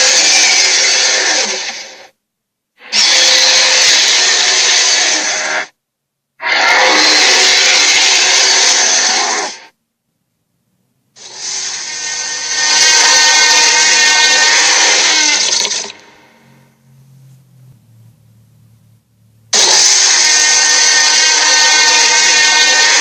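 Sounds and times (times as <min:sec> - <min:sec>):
cartoon sea monster roars: 0:06.4 - 0:09.7, 0:11.3 - 0:15.8, 0:19.6 - 0:23.0.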